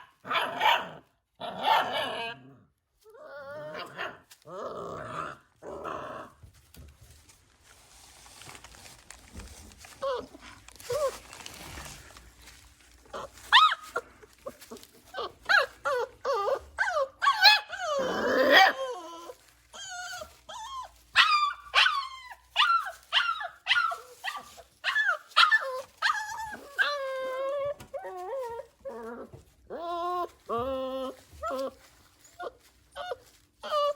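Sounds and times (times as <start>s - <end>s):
puppies whining and yelping: 9.9s - 11.7s, 13.0s - 33.9s.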